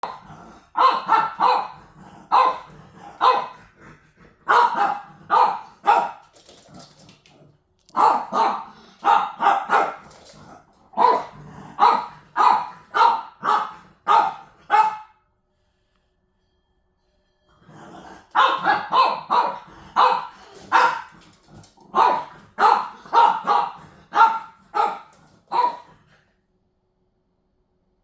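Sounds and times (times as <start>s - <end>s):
dog barking: 0.0s - 3.6s, 4.4s - 6.2s, 7.9s - 10.1s, 10.9s - 15.2s, 18.4s - 21.2s, 21.9s - 26.0s.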